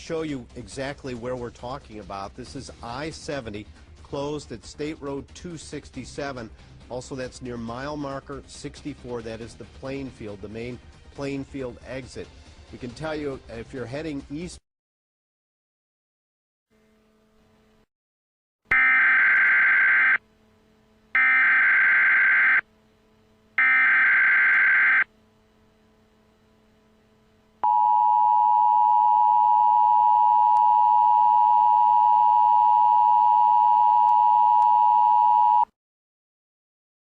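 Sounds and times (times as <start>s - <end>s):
data bursts: 21.2s - 22.6s, 23.6s - 25.1s
two-tone attention signal: 23.6s - 25.1s, 27.6s - 35.6s.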